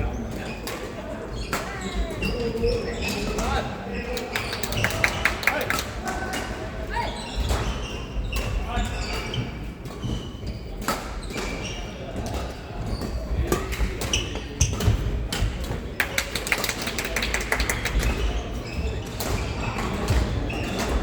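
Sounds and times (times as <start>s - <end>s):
background chatter: 0.0s - 21.0s
shoes squeaking on court floor: 6.9s - 15.6s, 17.2s - 21.0s.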